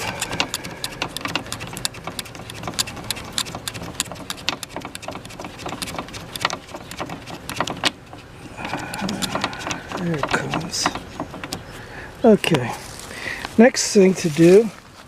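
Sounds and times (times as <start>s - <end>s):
metal ring clicking and scraping: 0.0s - 11.9s.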